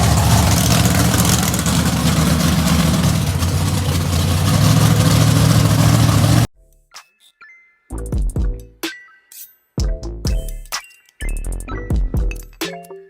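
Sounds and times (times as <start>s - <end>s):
engine droning loudly: 0.0s - 6.5s.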